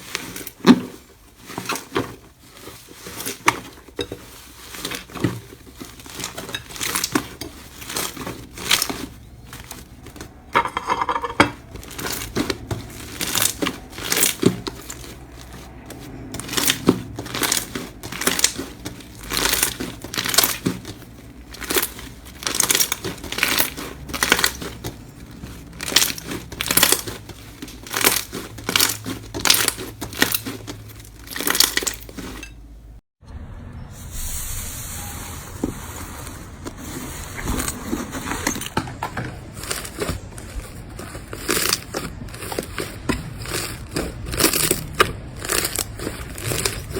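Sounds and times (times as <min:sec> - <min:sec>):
slime crackling and popping: 0:04.4 - 0:09.4, 0:11.8 - 0:15.6, 0:16.4 - 0:32.4, 0:39.6 - 0:46.9
steady hiss: 0:34.0 - 0:36.3.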